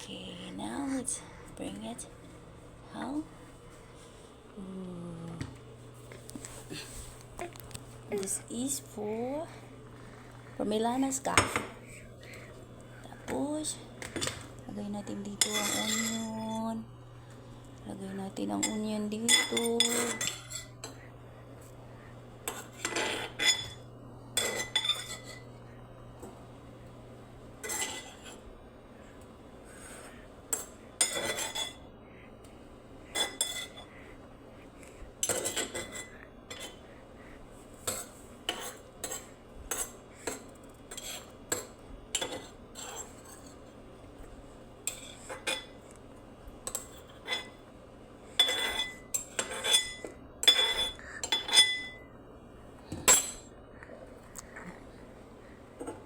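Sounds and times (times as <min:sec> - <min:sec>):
spoon clinking against dishes: 0:18.6 - 0:21.0, 0:48.4 - 0:52.1.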